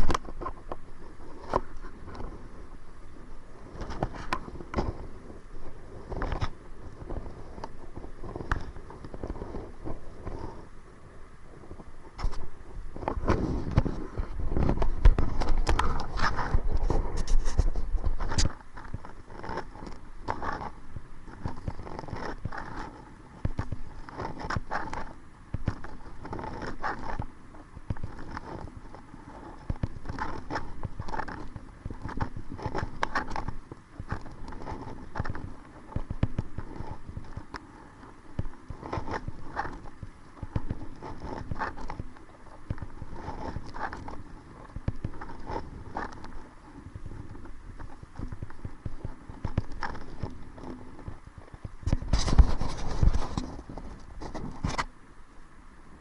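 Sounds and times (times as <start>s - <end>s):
wind buffeting microphone: 0.0s - 54.8s.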